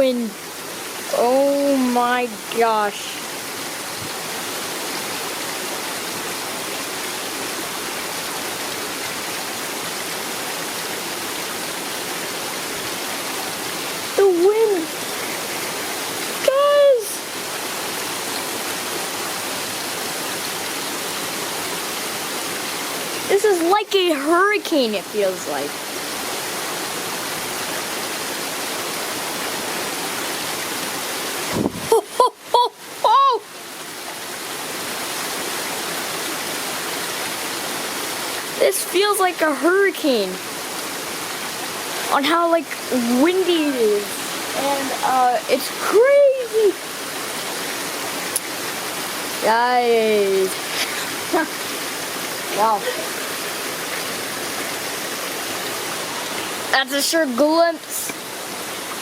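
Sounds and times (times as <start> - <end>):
heavy rain pouring: 0.0 - 59.0
strong wind: 31.4 - 32.2.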